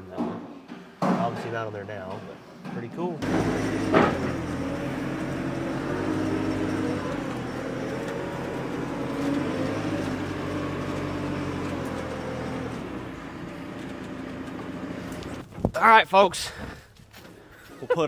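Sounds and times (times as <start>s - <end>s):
engine running steadily: 3.2s - 17.5s.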